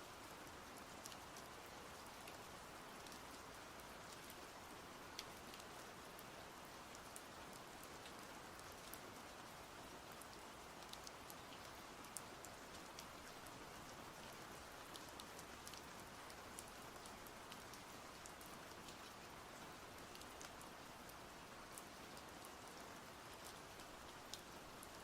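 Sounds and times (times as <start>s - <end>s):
faint steady rain: 0.0s - 25.0s
raindrops ticking on a surface: 0.1s - 25.0s.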